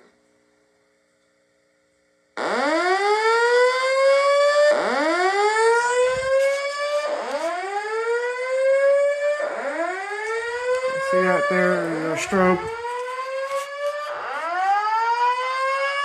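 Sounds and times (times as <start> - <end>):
fire alarm whoop tone: 2.4 - 16.0
spoken evacuation message: 10.8 - 12.9.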